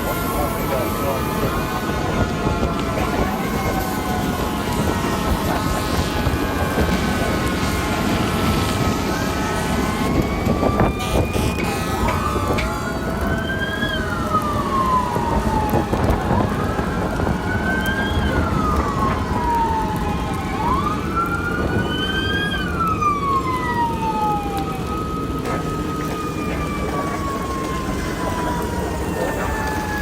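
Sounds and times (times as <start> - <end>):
heavy low rumbling: 0.0 - 13.4
emergency vehicle siren wailing: 0.0 - 30.0.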